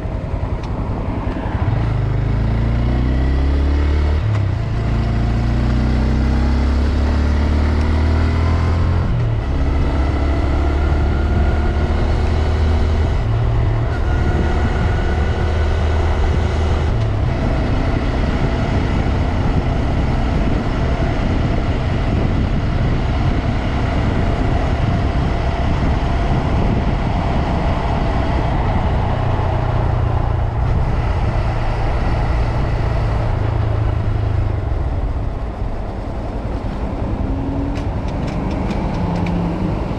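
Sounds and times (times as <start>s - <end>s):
motorcycle engine revving: 0.0s - 39.9s
wind rush: 0.0s - 39.9s.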